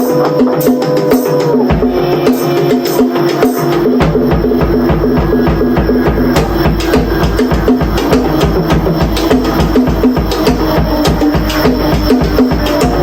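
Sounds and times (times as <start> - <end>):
fast drumming: 0.0 - 13.0
woodblock-like clicks: 6.4 - 13.0.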